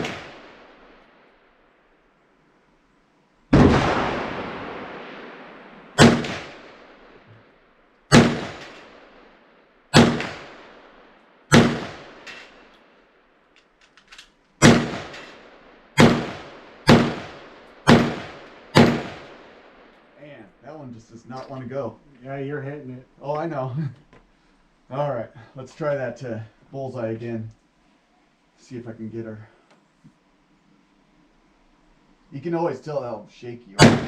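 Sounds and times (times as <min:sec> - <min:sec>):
pistol shots with echo: 0:00.0 - 0:00.8, 0:03.5 - 0:07.2, 0:08.1 - 0:09.2, 0:09.9 - 0:12.7, 0:14.6 - 0:19.6, 0:33.8 - 0:34.0.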